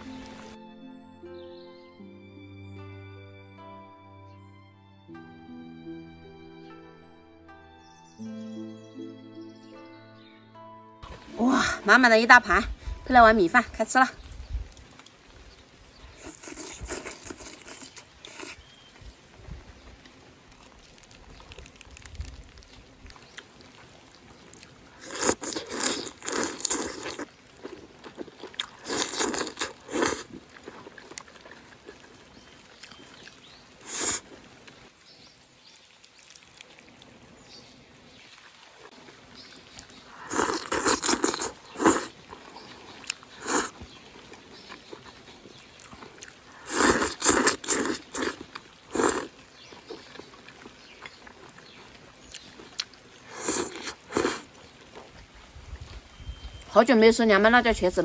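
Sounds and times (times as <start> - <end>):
chewing and biting food: 14.7 - 19.1, 20.0 - 34.8, 35.8 - 37.2, 38.3 - 56.0.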